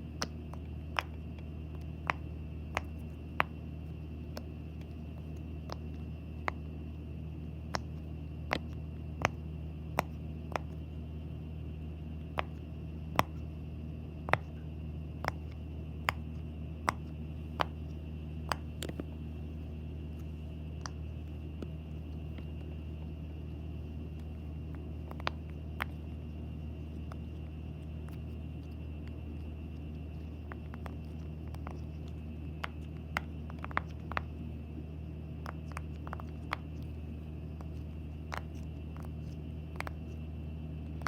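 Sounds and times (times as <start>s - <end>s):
steady low hum: 0.0s - 41.0s.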